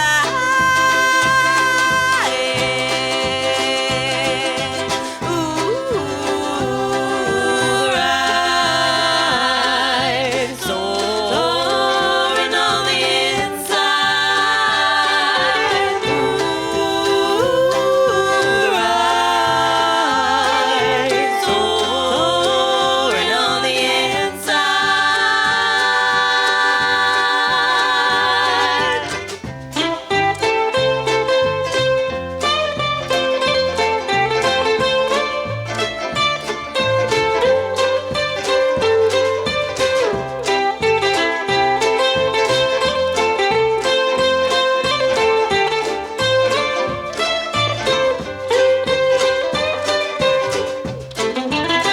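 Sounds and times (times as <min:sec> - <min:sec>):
live band playing: 0:00.0 - 0:51.9
stepping bass line: 0:00.0 - 0:51.9.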